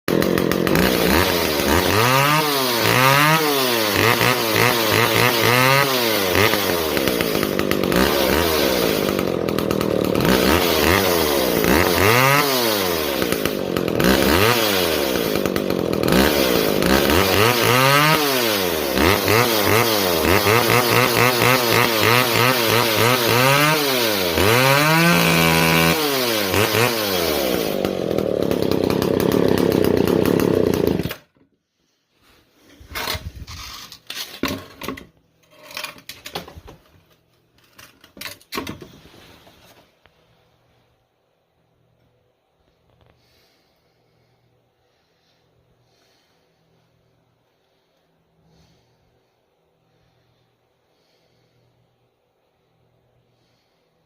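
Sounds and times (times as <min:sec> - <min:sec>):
chainsaw engine revving: 0:00.1 - 0:31.4, 0:33.0 - 0:34.6.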